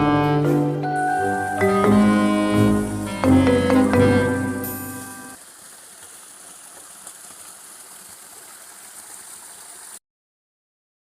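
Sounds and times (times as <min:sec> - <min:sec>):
mallet percussion music: 0:00.0 - 0:05.4
steady rushing hiss: 0:01.0 - 0:10.0.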